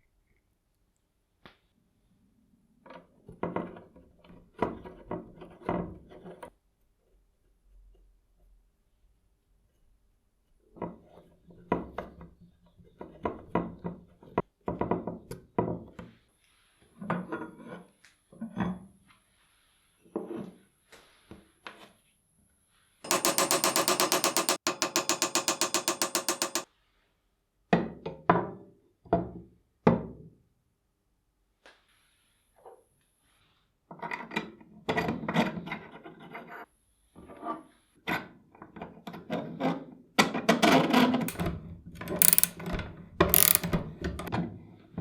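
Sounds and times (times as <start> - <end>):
metal parts knocking and clinking: 23.1 - 26.7, 42.2 - 42.6, 43.4 - 43.7
rapid even clicks: 23.1 - 26.7, 42.2 - 42.5, 43.4 - 43.7.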